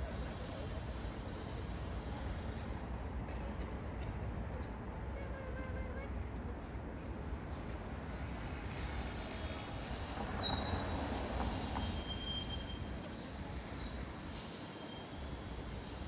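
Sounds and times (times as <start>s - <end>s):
brief high-pitched squeals: 10.4s - 11.1s, 11.8s - 13.0s.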